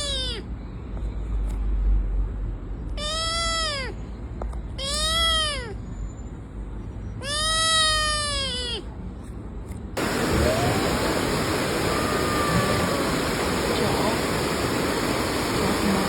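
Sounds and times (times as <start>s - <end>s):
cat meowing: 0.0s - 0.5s, 2.9s - 4.1s, 4.8s - 5.9s, 7.2s - 8.9s, 10.0s - 16.0s.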